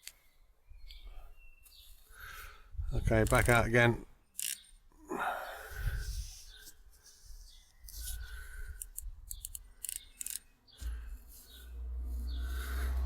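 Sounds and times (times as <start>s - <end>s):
quick clicks and rasping rubs: 3.2s - 3.7s, 4.4s - 4.8s, 6.0s - 13.0s.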